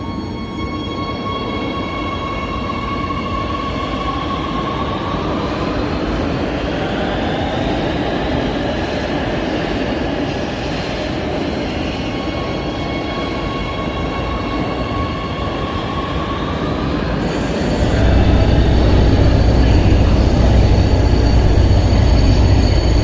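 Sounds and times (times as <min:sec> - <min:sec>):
train rumbling on track: 0:17.2 - 0:23.0
faint high drifting tones: 0:17.8 - 0:23.0.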